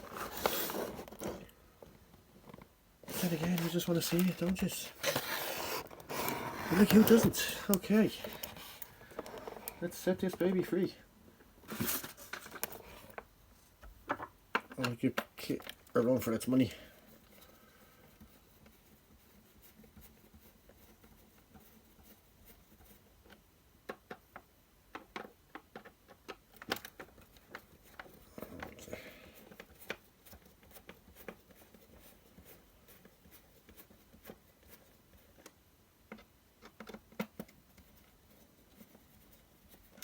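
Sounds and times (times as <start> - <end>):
packaging rustle: 0.0 - 1.5, 2.5 - 10.8, 11.7 - 13.2
light clicks and taps: 2.4 - 4.7.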